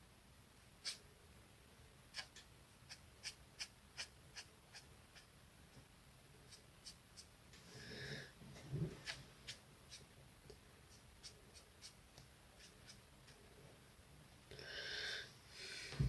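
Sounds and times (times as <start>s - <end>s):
faint low room hum: 0.0s - 16.0s
coloring tool strokes: 12.6s - 13.4s.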